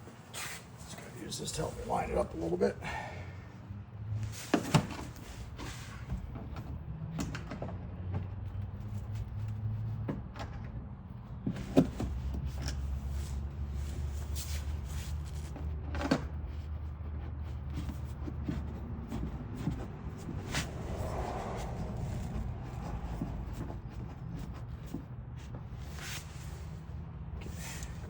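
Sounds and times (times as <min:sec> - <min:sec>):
low hum: 0:19.4 - 0:25.0.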